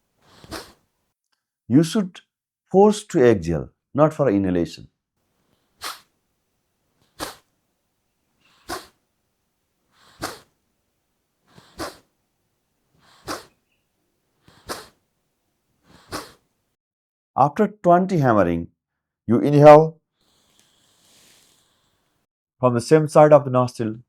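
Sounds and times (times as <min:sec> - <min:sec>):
forceful nasal exhalations: 0:00.2 - 0:00.9, 0:05.4 - 0:06.2, 0:07.0 - 0:07.6, 0:08.4 - 0:09.0, 0:09.9 - 0:10.6, 0:11.4 - 0:12.2, 0:12.9 - 0:15.1, 0:15.8 - 0:16.6, 0:20.2 - 0:22.2.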